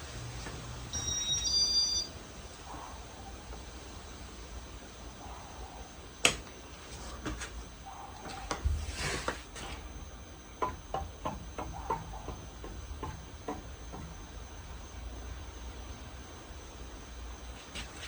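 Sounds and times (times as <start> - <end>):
ceiling fan humming: 0.0 - 18.0
light clicks and knocks: 10.6 - 14.8.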